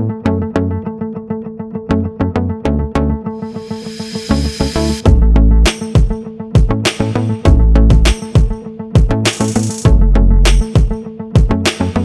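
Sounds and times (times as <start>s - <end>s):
rhythmic instrumental music: 3.3s - 12.0s.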